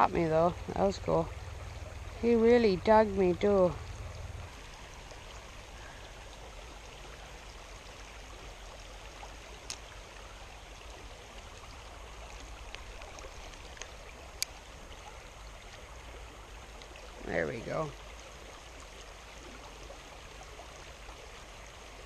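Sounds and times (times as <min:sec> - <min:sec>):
stream water rushing: 0:00.0 - 0:22.0
faint ticks: 0:09.6 - 0:10.0, 0:12.3 - 0:15.9, 0:16.7 - 0:17.0.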